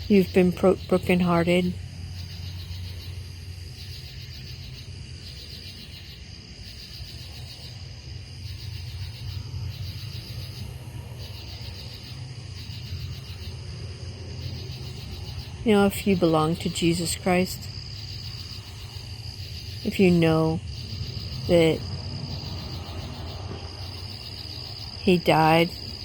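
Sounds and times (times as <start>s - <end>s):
night insects chirring: 0.0s - 26.0s
steady low rumble: 7.9s - 26.0s.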